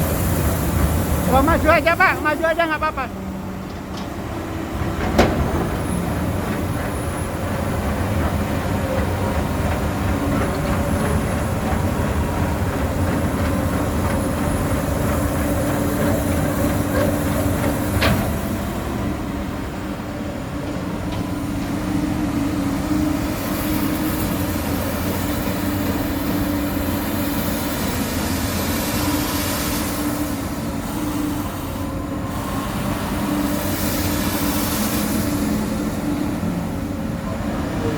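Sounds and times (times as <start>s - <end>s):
diesel engine humming: 0.0s - 23.5s.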